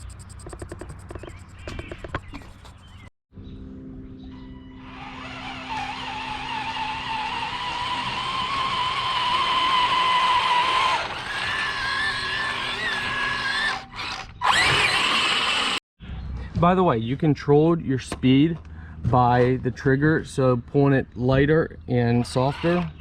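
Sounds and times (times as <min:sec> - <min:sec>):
electric motors whining: 0:04.7 - 0:15.8, 0:22.2 - 0:23.0.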